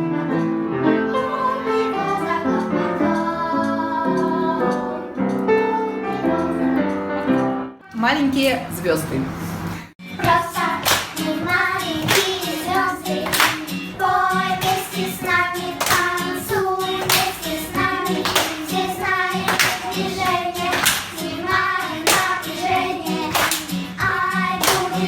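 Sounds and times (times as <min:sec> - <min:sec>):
musical accompaniment: 0:00.0 - 0:07.9, 0:10.0 - 0:25.0
children singing: 0:00.3 - 0:07.3, 0:10.1 - 0:25.0
hand claps on the beat: 0:10.2 - 0:25.0.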